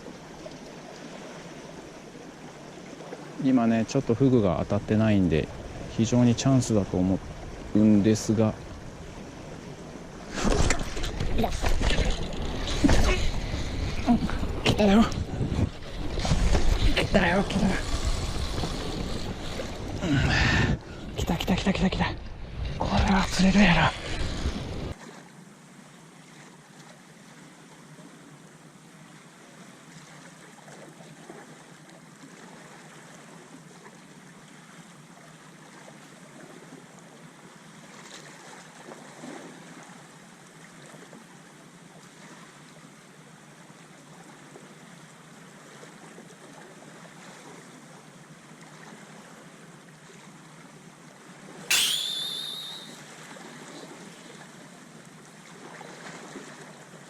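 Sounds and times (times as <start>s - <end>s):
seawater lapping: 0.0s - 4.5s, 29.1s - 36.9s
wind: 0.0s - 57.0s
sharp high thin tone: 51.7s - 53.0s.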